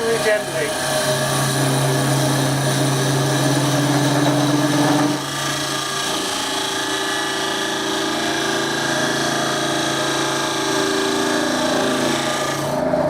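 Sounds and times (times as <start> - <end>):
turning tool scraping wood: 0.0 - 6.6, 11.5 - 13.0
wood lathe motor running: 0.0 - 13.0.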